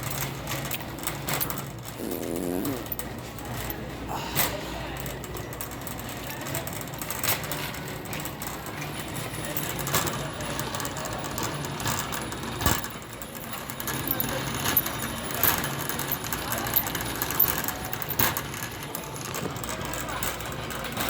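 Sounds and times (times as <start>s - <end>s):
faint background voices: 0.6s - 21.0s.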